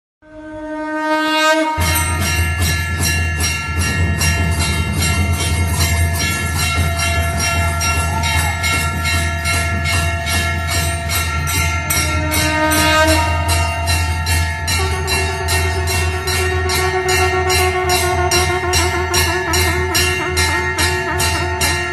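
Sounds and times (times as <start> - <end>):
temple bells ringing rapidly: 1.7 - 21.9.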